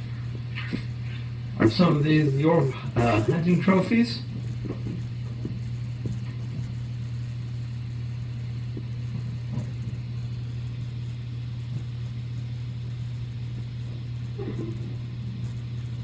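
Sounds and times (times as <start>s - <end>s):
low room hum: 0.0s - 16.0s.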